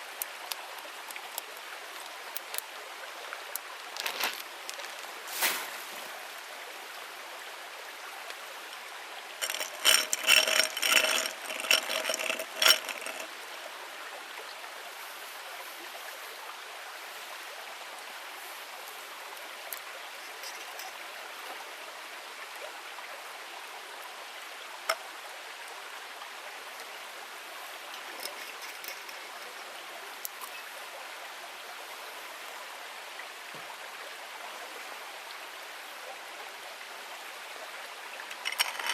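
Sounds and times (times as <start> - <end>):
ringing clinks: 9.4 - 13.3, 20.2 - 20.9, 27.9 - 29.3, 38.3 - 38.9.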